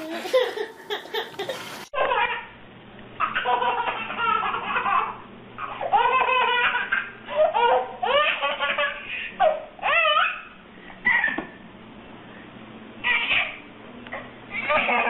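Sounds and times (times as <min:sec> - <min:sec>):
baby giggling: 0:03.2 - 0:11.5, 0:14.5 - 0:15.0.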